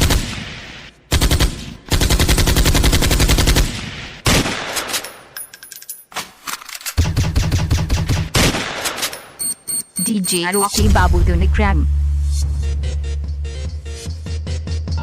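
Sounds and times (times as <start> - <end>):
rapid bass-heavy hits: 10.8 - 14.1.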